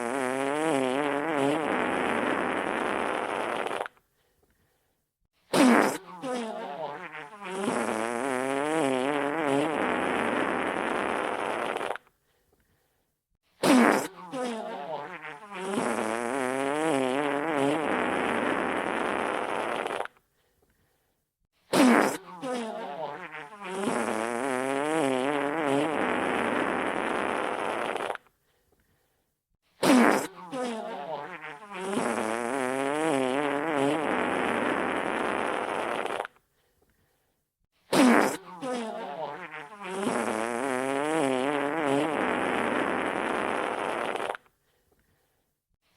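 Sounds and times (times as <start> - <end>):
wet fart sound effect: 0.0 - 4.0, 5.5 - 12.1, 13.6 - 20.2, 21.7 - 28.3, 29.8 - 36.4, 37.9 - 44.5.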